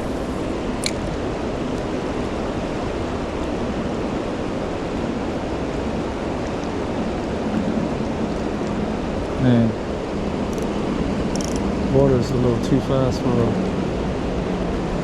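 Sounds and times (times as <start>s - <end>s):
river rushing: 0.0s - 15.0s
sharp click: 0.8s - 1.0s, 11.3s - 11.7s.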